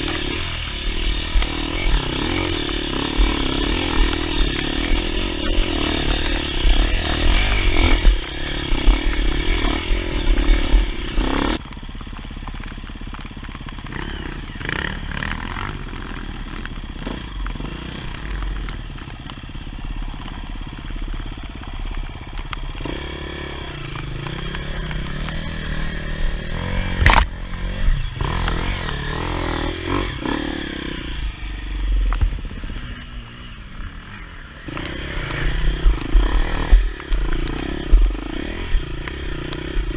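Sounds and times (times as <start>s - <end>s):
dirt bike engine running: 0.0s - 39.9s
sharp click: 27.0s - 27.4s.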